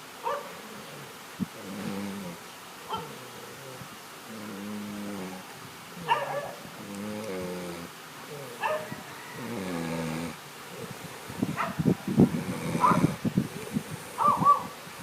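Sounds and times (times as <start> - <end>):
person snoring: 0.7 - 2.4, 3.2 - 5.4, 6.8 - 8.6, 9.4 - 11.0, 12.2 - 14.2.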